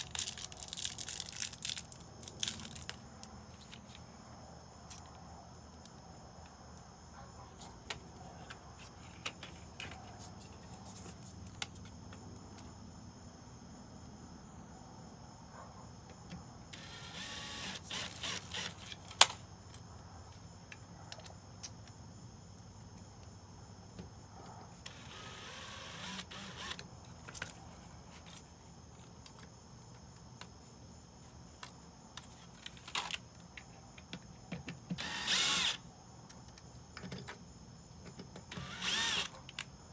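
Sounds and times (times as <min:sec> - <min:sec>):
cordless drill running: 0:16.8 - 0:19.0, 0:24.9 - 0:26.8, 0:35.0 - 0:35.8, 0:38.5 - 0:39.4.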